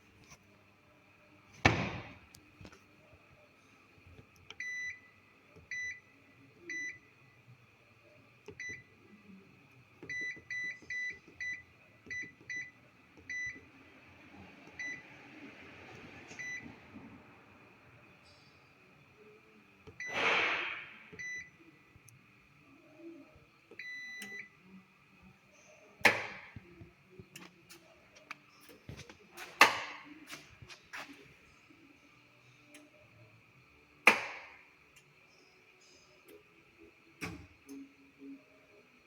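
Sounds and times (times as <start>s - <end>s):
washing machine beeps: 4.6s - 7.3s, 8.5s - 9.2s, 10.0s - 13.9s, 14.6s - 15.2s, 16.3s - 16.8s, 19.2s - 21.8s, 22.6s - 24.8s.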